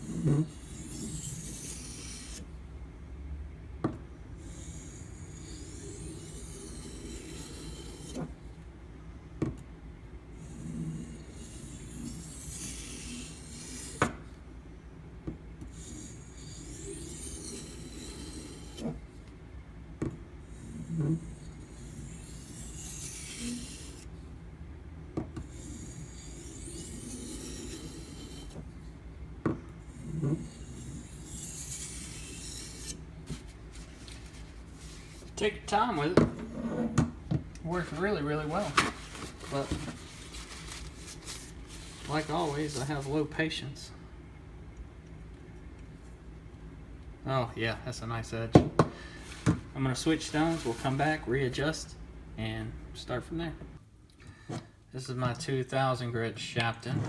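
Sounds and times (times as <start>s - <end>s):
knife scraping on whetstone: 0.0s - 2.5s, 4.4s - 8.4s, 10.4s - 14.2s, 15.7s - 19.0s, 20.5s - 24.1s, 25.4s - 28.7s, 29.8s - 37.1s, 37.7s - 43.2s, 49.2s - 51.1s.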